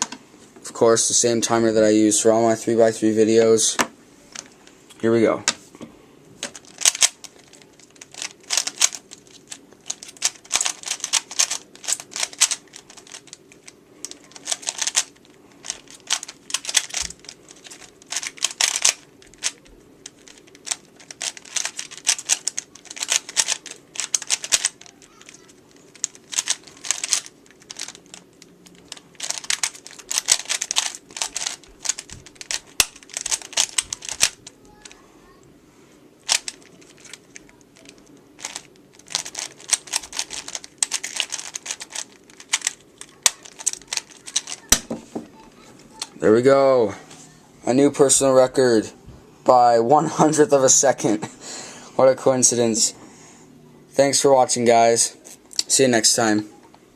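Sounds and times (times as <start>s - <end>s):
plastic puzzle cube clicking: 14.0s - 28.2s, 28.8s - 34.5s, 36.3s - 37.2s, 37.8s - 44.8s.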